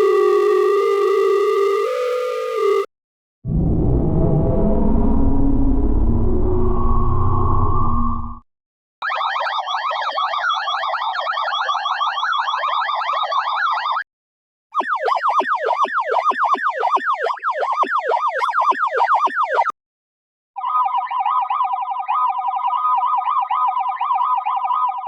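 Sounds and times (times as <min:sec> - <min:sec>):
sci-fi alarm drone with ringing tones: 0:03.5 - 0:08.4
synthesized warbling alarm siren: 0:03.5 - 0:08.4, 0:09.0 - 0:14.0, 0:14.8 - 0:19.7.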